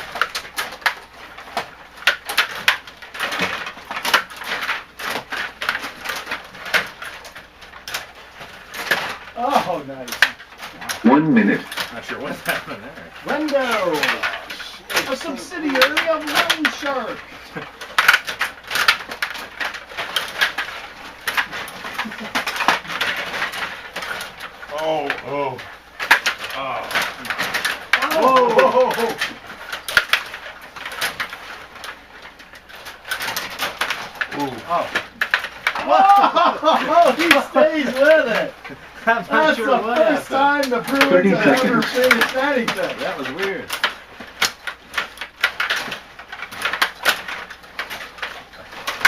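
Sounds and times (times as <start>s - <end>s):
video game hockey clacks and scrapes: 0.0s - 24.7s, 27.1s - 49.0s
rapid irregular clicks and taps: 0.0s - 49.0s.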